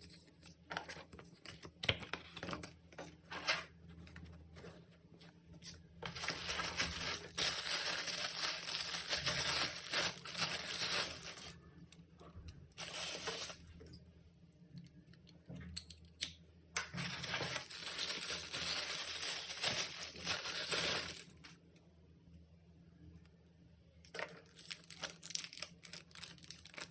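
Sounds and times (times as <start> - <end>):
packaging crinkling: 5.6 - 11.6, 12.8 - 13.7, 17.0 - 21.6, 24.1 - 26.9.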